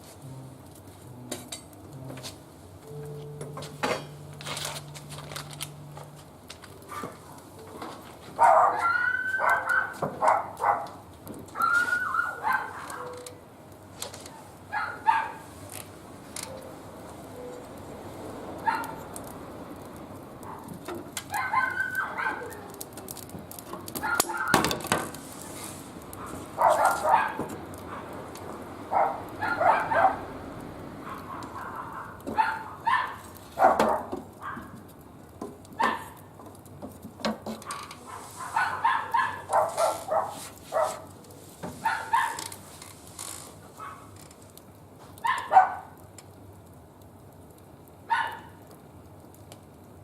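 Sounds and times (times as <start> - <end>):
wood fire crackling: 0.0 - 50.0
dog barking: 8.4 - 11.0, 11.6 - 13.2, 14.7 - 15.4, 18.6 - 19.0, 21.3 - 22.7, 24.0 - 24.6, 26.2 - 28.1, 28.9 - 30.2, 31.0 - 34.7, 35.8 - 36.2, 38.1 - 41.1, 41.8 - 42.4, 43.8 - 44.1, 45.2 - 45.9, 48.1 - 48.6.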